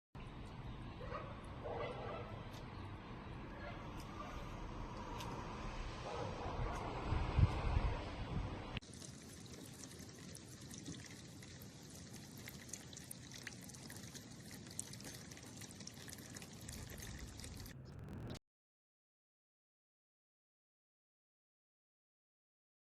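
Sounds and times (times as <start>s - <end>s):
fountain water splashing: 8.8s - 17.8s
low rumble: 17.2s - 18.4s.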